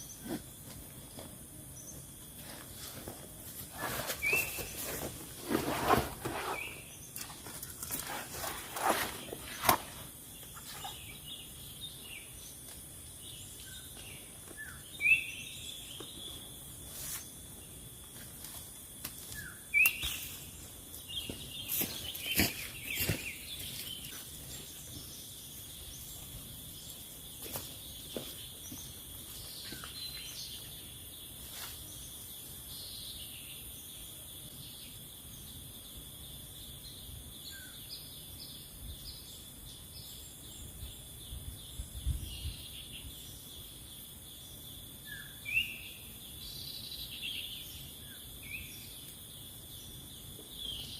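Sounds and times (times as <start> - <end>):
birds chirping: 19.3 - 33.8.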